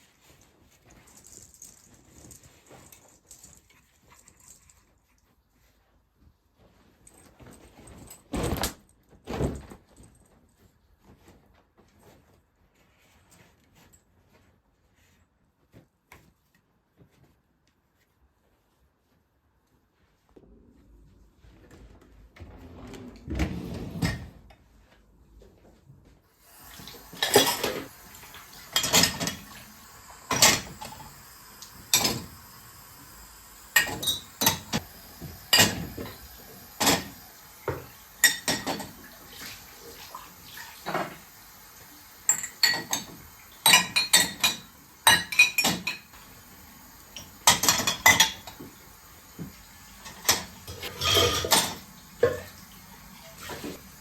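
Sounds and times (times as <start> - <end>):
dishes and cutlery clinking: 26.8 - 32.6, 33.6 - 39.1, 42.3 - 46.1, 47.2 - 48.7, 50.0 - 52.5.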